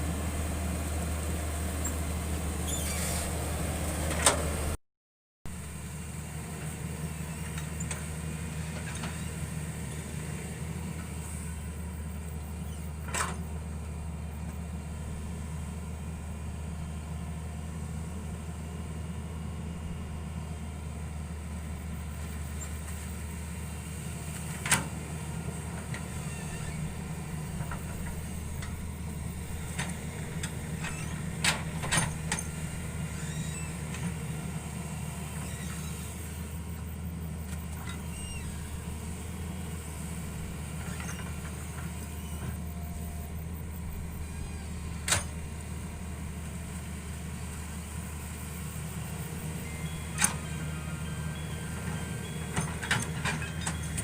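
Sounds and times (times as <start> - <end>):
diesel engine running: 0.0 - 4.8, 5.5 - 54.0.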